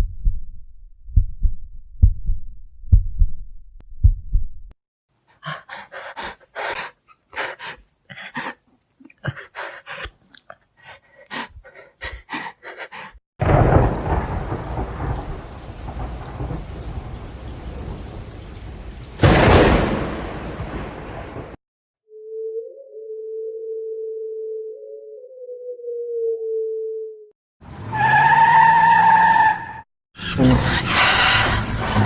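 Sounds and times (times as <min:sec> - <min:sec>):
heartbeat thumps: 0:01.1 - 0:04.6
ragged breathing: 0:05.3 - 0:13.2, 0:30.2 - 0:32.0
thunderclap rumbling: 0:13.4 - 0:21.6
rain hiss: 0:13.6 - 0:21.6.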